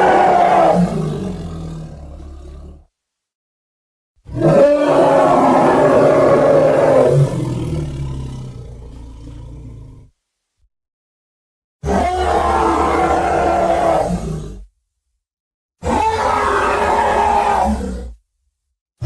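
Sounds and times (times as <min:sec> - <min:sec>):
monster roar: 0:00.0 - 0:02.8, 0:04.3 - 0:09.9, 0:11.8 - 0:14.6, 0:15.9 - 0:18.1.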